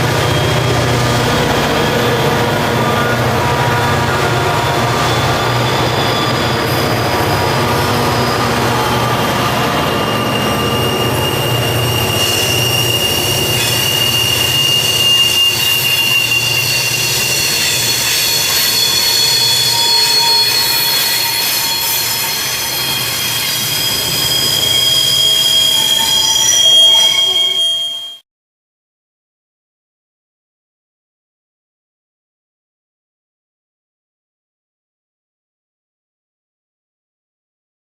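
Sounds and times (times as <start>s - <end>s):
diesel locomotive hum: 0.0s - 27.4s
train wheels squealing: 0.0s - 28.2s.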